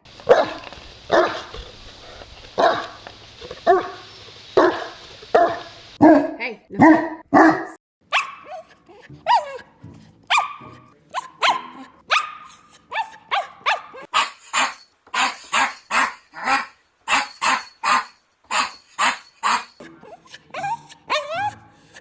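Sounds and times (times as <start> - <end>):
dog barking: 0.3 - 1.5, 2.6 - 2.9, 3.7 - 4.0, 4.6 - 9.6, 10.3 - 19.7, 20.5 - 21.6.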